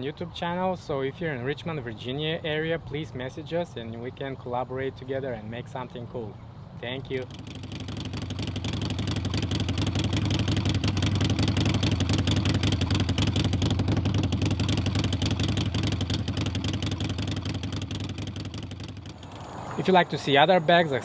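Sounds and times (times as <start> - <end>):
motorcycle engine running: 6.8 - 21.0.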